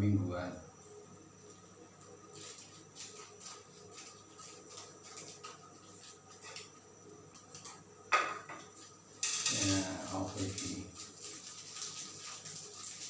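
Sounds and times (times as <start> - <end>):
kitchen items clicking and rustling: 9.2 - 13.0.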